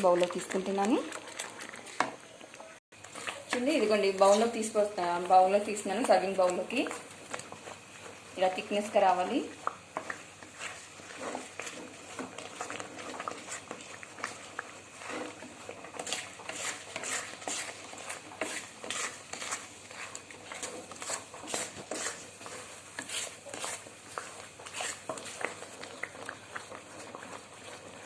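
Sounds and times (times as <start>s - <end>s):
metal spoon scraping a pan: 10.0s - 14.4s, 15.0s - 26.0s.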